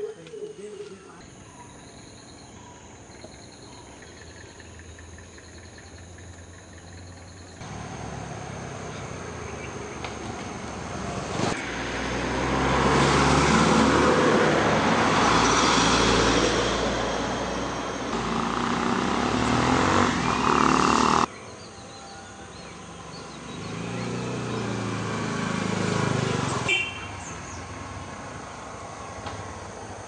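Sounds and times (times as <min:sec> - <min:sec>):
vehicle engine running: 0:04.0 - 0:12.0, 0:17.4 - 0:21.3.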